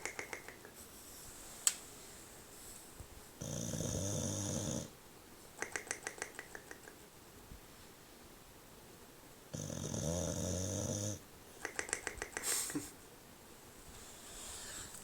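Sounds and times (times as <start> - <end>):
sharp click: 0.0 - 0.7, 5.6 - 7.0, 11.6 - 12.5
dog snoring: 3.4 - 5.0, 9.5 - 11.2.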